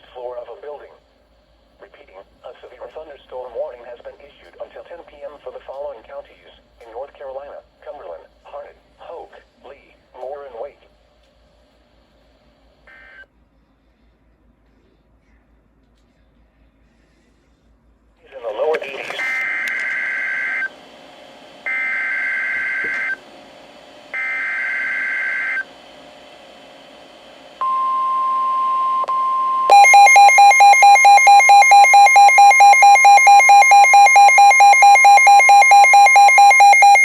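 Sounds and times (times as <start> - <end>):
steady alarm tone: 19.2 - 20.8, 21.6 - 25.7, 27.6 - 37.0
loud fast pulsing alarm beep: 21.7 - 23.2, 24.1 - 25.7, 27.6 - 37.0
screechy digital data tones: 29.7 - 37.0.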